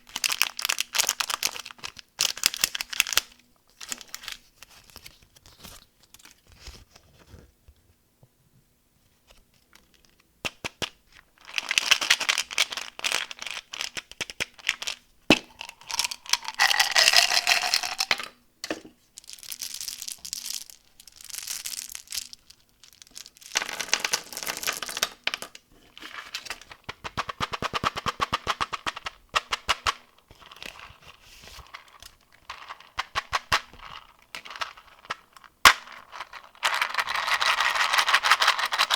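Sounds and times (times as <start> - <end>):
candy wrappers crinkling: 0.1 - 6.4, 11.4 - 18.3, 19.1 - 25.2, 29.6 - 38.9.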